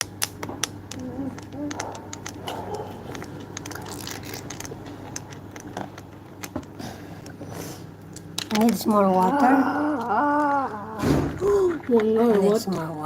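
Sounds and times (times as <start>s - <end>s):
plastic toy pieces clicking: 0.0s - 6.7s, 8.2s - 10.8s
steady low hum: 0.0s - 13.0s.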